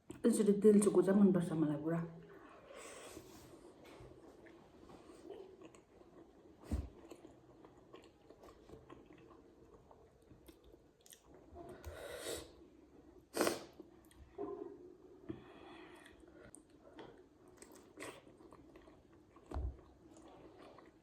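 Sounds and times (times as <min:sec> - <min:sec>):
person chewing food: 0:02.3 - 0:11.9, 0:15.9 - 0:21.0.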